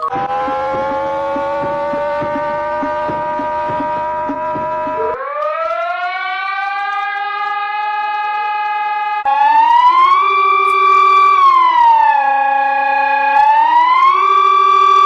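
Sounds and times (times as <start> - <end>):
buzzy alarm tone: 0.0 - 5.4
loud siren tone: 0.0 - 15.0.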